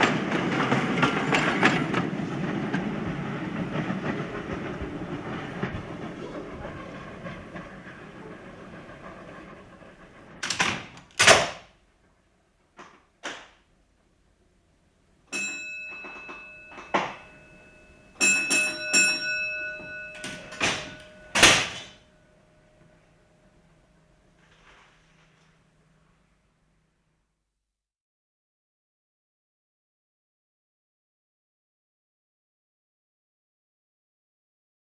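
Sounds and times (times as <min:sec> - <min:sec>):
train rumble: 0:00.0 - 0:26.9
metallic bangs and clanks: 0:16.0 - 0:22.0.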